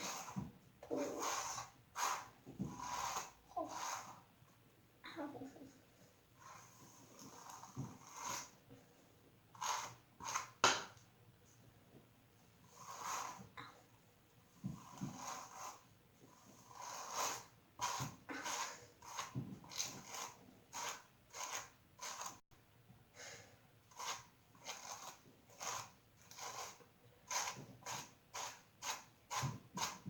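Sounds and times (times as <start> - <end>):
hairbrush swishing through hair: 0.0 - 4.3, 6.4 - 8.6, 12.6 - 13.6, 14.6 - 22.4, 23.9 - 30.0.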